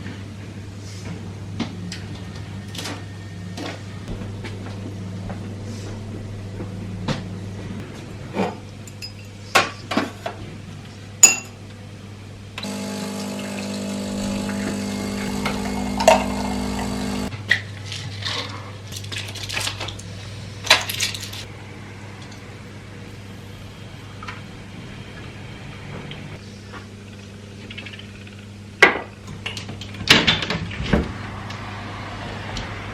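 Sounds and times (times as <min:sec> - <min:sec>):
small appliance humming: 0:12.6 - 0:17.3.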